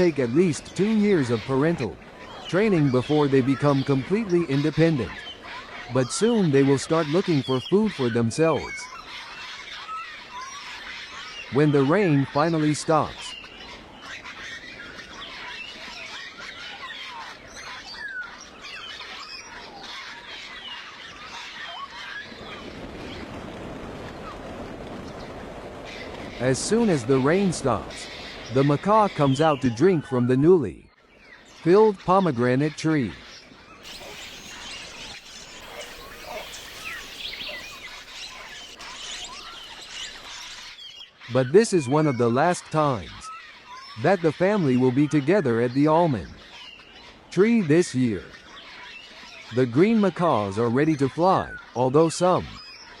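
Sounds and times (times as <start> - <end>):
small birds chirping: 0.0 - 22.7, 31.1 - 53.0
steady background hiss: 33.8 - 40.9
birds chirping and whistling: 33.8 - 42.2.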